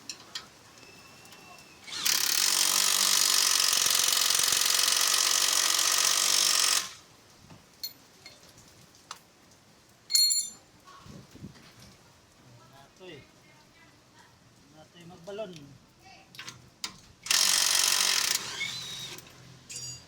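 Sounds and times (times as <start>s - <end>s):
power tool buzzing: 1.8s - 7.0s, 17.3s - 19.3s
sharp metallic clink: 10.1s - 10.6s, 19.7s - 20.0s.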